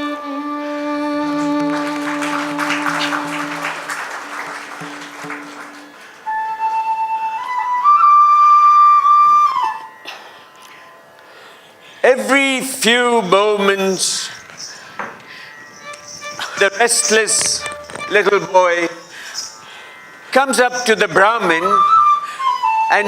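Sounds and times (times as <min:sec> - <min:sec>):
flute melody: 0:00.0 - 0:10.4, 0:15.5 - 0:20.1, 0:20.7 - 0:23.0.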